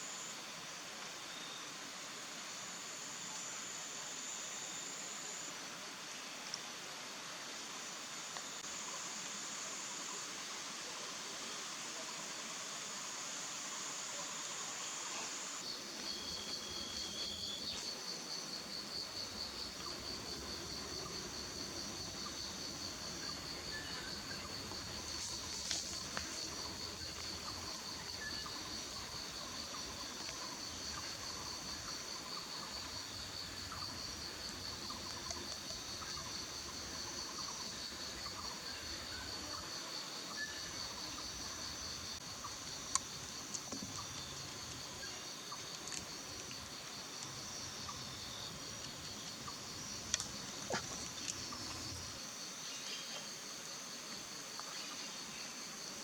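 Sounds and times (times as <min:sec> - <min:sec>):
insects trilling: 0:07.5 - 0:56.0
faint clicks: 0:35.0 - 0:35.8, 0:42.9 - 0:44.8, 0:50.0 - 0:51.9.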